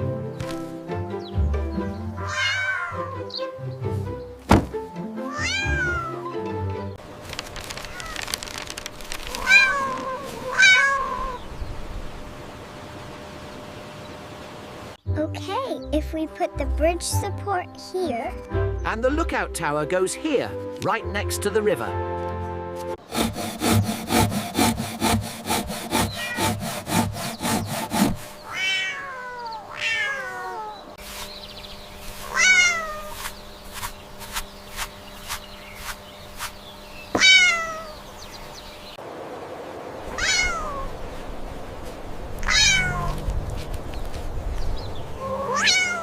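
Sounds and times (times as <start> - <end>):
cat meowing: 2.2 - 3.2, 5.3 - 6.2, 9.3 - 11.4, 26.2 - 26.4, 28.4 - 30.8, 32.2 - 33.1, 37.2 - 38.0, 40.1 - 40.9, 42.4 - 43.2, 45.2 - 46.0
quick scraping strokes: 31.0 - 36.6.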